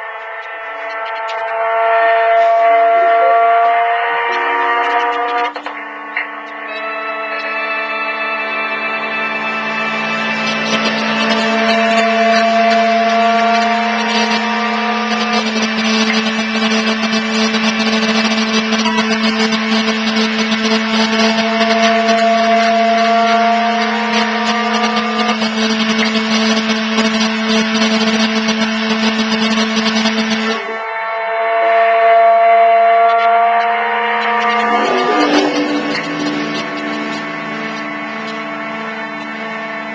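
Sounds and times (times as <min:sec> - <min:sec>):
low drone: 0:00.0 - 0:39.9
rising tones: 0:00.0 - 0:39.9.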